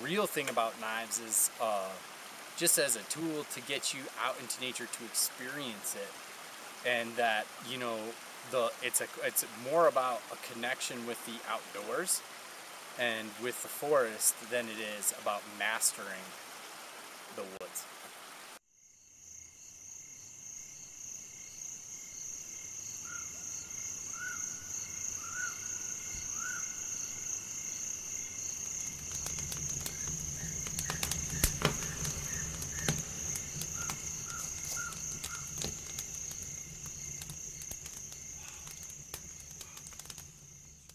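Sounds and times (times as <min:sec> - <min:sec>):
crickets trilling: 0:00.0 - 0:17.2, 0:18.7 - 0:40.9
short insect chirps: 0:18.7 - 0:40.9.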